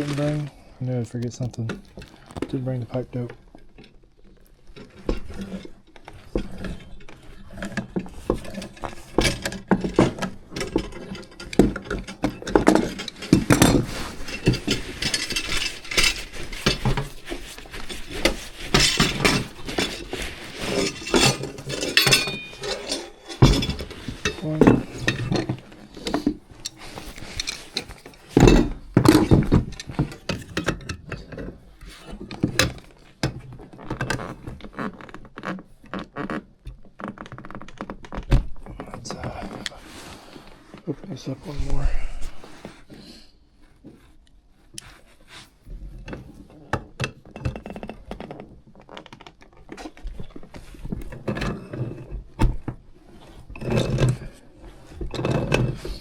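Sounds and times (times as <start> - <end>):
metal tools clinking and rattling: 6.6 - 31.4.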